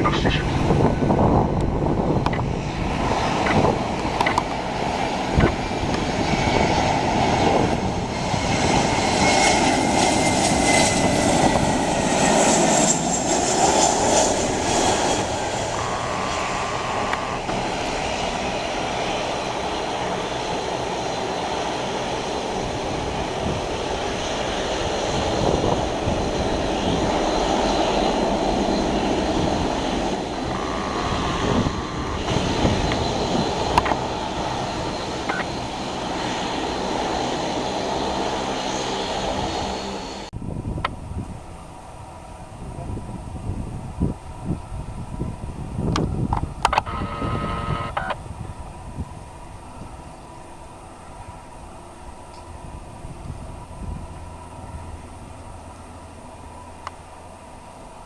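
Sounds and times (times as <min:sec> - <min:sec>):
faint falling engine whine: 0:00.0 - 0:40.3
jet engines rushing: 0:00.0 - 0:58.0.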